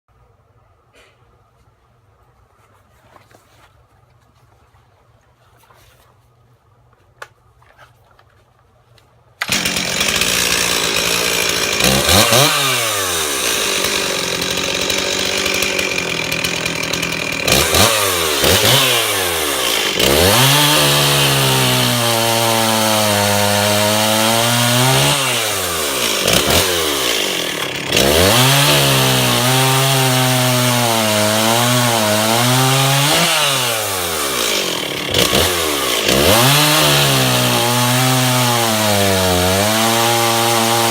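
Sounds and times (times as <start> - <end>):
chainsaw revving: 9.4 - 40.9.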